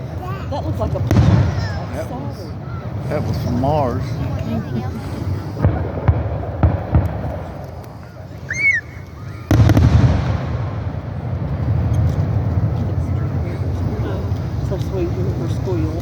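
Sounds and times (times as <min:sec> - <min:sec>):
firework boom with rolling rumble: 0:00.0 - 0:16.0
fireworks bangs: 0:00.0 - 0:16.0.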